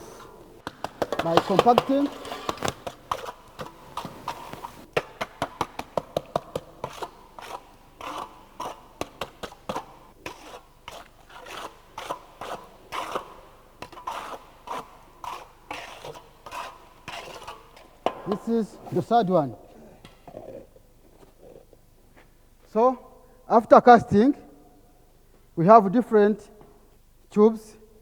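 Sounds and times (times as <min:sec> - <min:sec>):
trowel scraping fresh concrete: 0:00.0 - 0:19.3.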